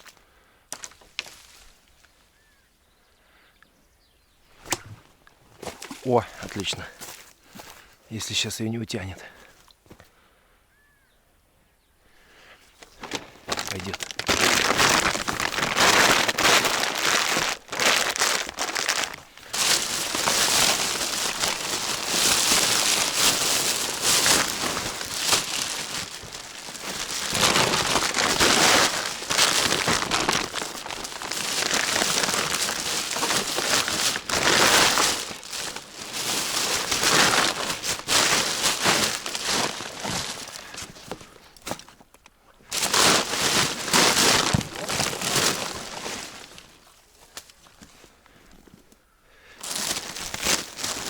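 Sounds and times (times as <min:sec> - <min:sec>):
rustling and crinkling: 0:00.0 - 0:02.6, 0:04.5 - 0:07.9, 0:12.6 - 0:49.0, 0:49.6 - 0:51.0.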